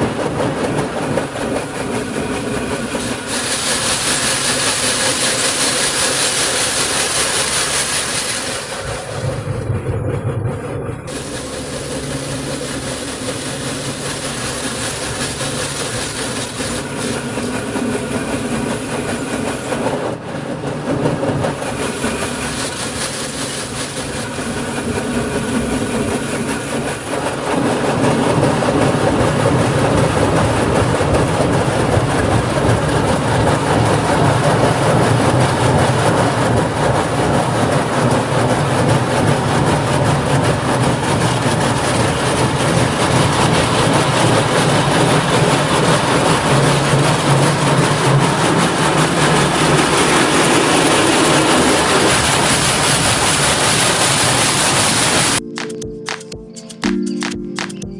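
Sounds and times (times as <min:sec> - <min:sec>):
car wash machinery rumbling: 0:00.0 - 0:55.4
car wash water spray: 0:03.0 - 0:09.3, 0:11.1 - 0:17.5, 0:21.6 - 0:25.1.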